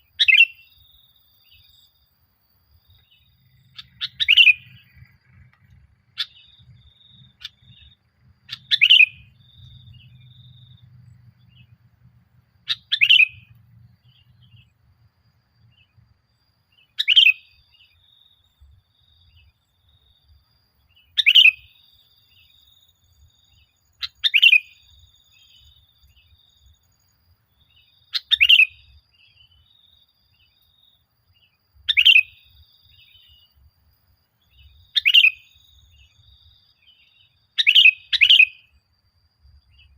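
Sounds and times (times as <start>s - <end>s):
bird whistling song: 0.0s - 1.9s, 2.9s - 11.8s, 12.6s - 14.8s, 16.7s - 18.1s, 20.9s - 26.8s, 27.7s - 29.7s, 31.8s - 33.6s, 34.4s - 38.8s
soft high bird chatter: 2.9s - 14.8s.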